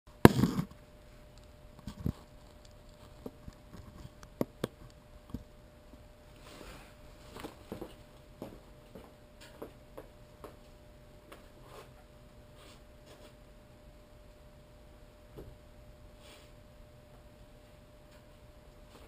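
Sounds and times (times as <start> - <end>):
faint steady hum: 0.1 - 19.0.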